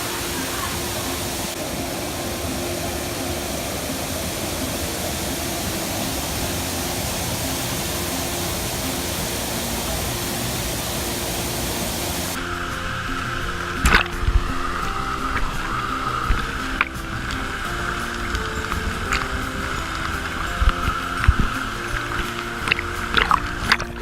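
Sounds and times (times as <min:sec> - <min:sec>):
quiet background music: 0:00.0 - 0:24.0
steady hum: 0:00.0 - 0:24.0
waterfall rushing: 0:00.0 - 0:24.0.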